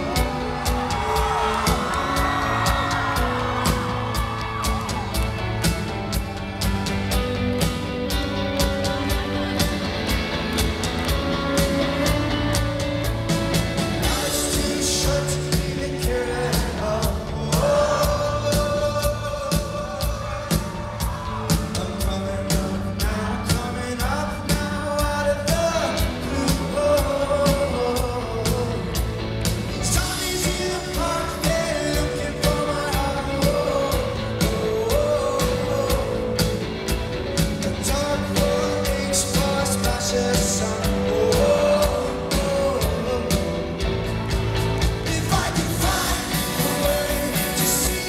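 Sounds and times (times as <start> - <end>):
singer with rock band: 0.0 - 48.0
steady drum beat: 0.0 - 48.0.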